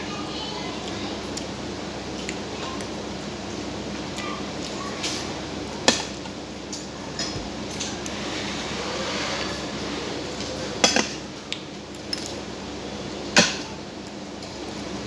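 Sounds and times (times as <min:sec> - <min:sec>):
utensils clinking against dishes: 0:09.3 - 0:12.5.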